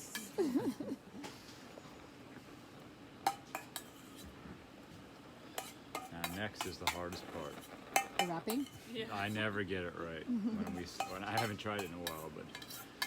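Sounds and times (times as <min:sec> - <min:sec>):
cutlery and dishes clinking: 0:03.3 - 0:04.2, 0:05.6 - 0:09.4, 0:10.6 - 0:13.0.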